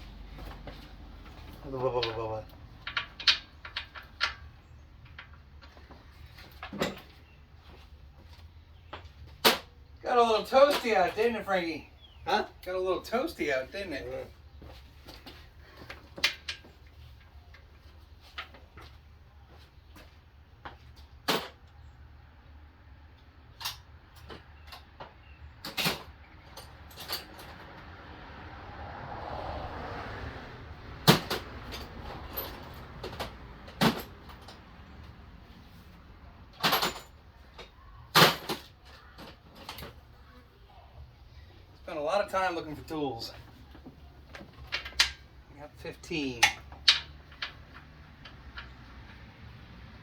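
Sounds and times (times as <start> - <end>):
metal tools clinking: 31.1 - 34.7, 36.6 - 39.9.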